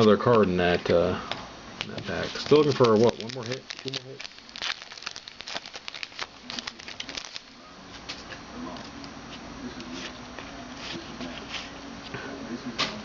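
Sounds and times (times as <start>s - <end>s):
cards clicking: 1.8s - 7.4s
foil pack crinkling: 2.1s - 7.6s.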